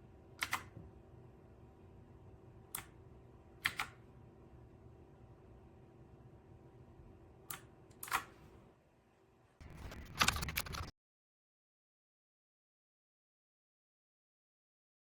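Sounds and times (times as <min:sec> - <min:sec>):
mechanical keyboard keys clacking: 0:09.6 - 0:10.9.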